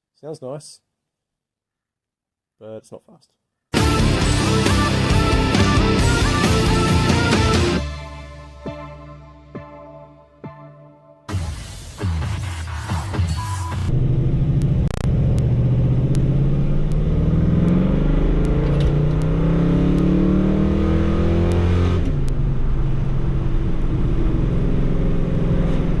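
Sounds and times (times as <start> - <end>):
car engine accelerating: 3.8 - 8.2, 13.9 - 26.0.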